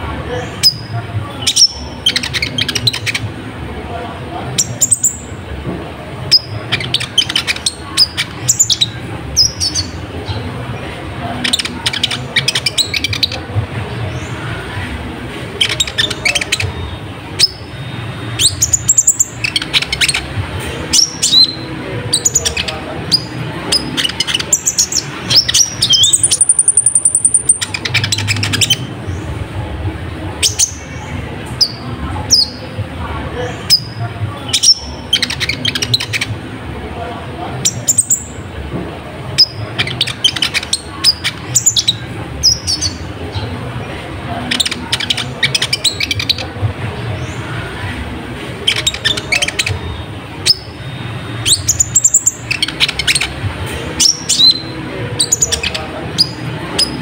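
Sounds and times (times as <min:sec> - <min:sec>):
bird chirping and twittering: 0:00.0 - 0:57.0
very high bird trill: 0:00.4 - 0:03.3.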